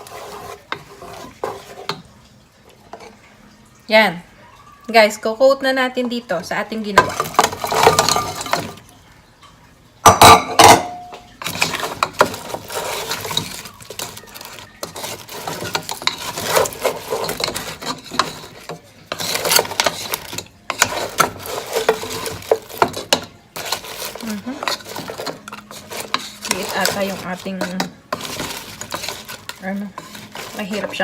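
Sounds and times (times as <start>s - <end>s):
spoon scraping and clinking in bowl: 7.0s - 8.8s, 10.1s - 31.0s.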